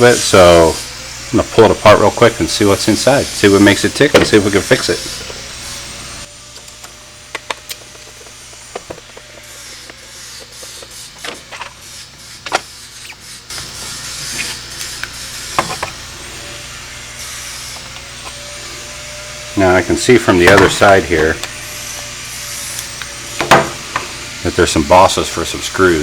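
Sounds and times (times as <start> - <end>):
rubbing and scraping: 7.4 - 16.6.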